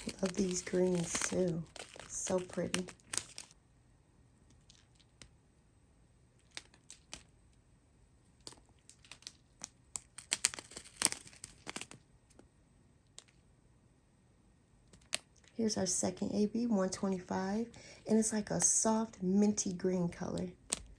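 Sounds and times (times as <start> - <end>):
plastic bags crinkling: 0.0 - 3.6, 8.4 - 12.0.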